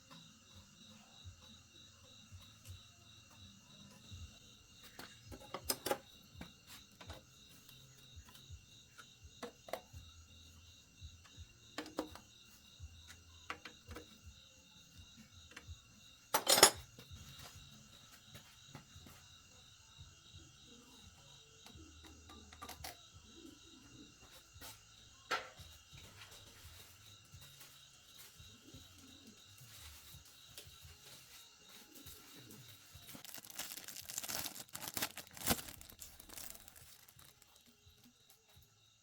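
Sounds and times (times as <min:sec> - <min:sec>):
metal tools clinking: 0:16.3 - 0:16.8.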